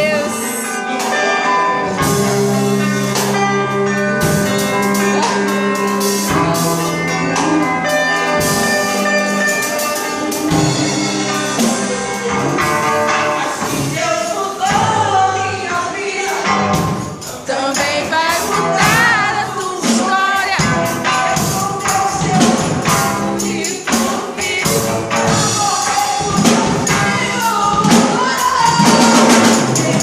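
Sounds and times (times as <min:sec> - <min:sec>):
band playing sustained chords: 0:00.0 - 0:14.0
percussion hits: 0:01.8 - 0:30.0.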